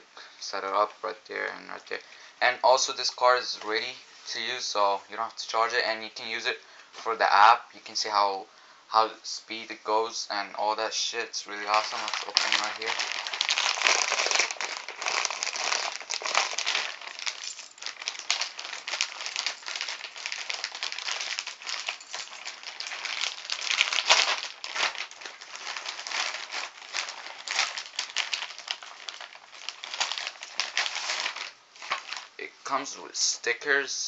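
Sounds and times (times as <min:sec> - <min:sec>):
packaging crinkling and rustling: 0:11.6 - 0:32.4.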